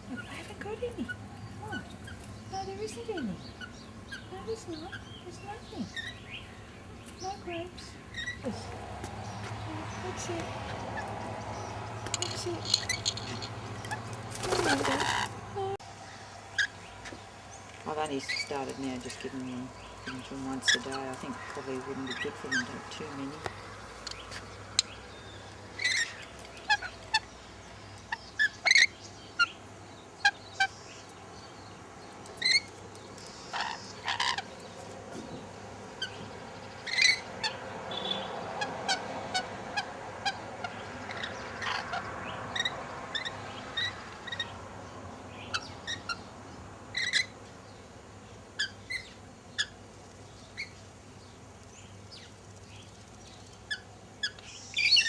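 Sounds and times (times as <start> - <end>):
birds chirping and squawking: 0.0 - 55.0.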